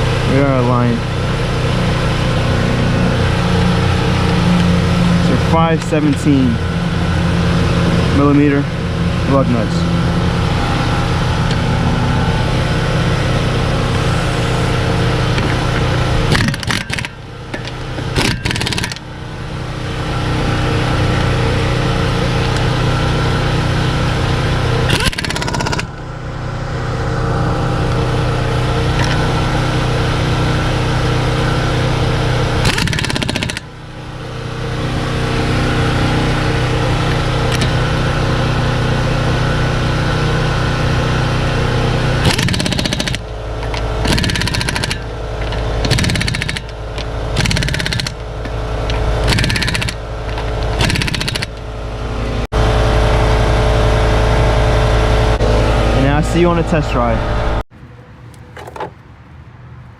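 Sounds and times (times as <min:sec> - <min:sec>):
steady motor hum: 0:00.0 - 0:59.9
power wrench rattling: 0:13.8 - 0:19.1, 0:24.9 - 0:25.9, 0:32.6 - 0:33.7, 0:42.2 - 0:51.7.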